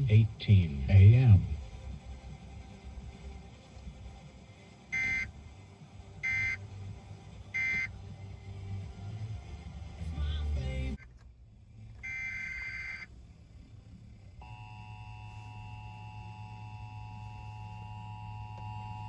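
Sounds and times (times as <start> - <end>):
low hum: 0.0 - 19.0
two-tone attention signal: 4.9 - 5.3, 6.2 - 6.6, 7.6 - 7.9, 12.0 - 13.1
data burst tones: 4.9 - 5.5, 6.2 - 6.6, 7.5 - 8.0, 12.0 - 13.1.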